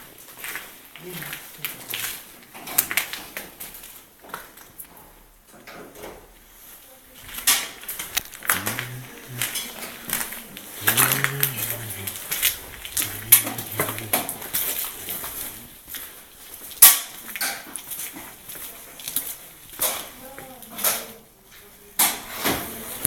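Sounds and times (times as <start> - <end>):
man talking: 8.4 - 15.8.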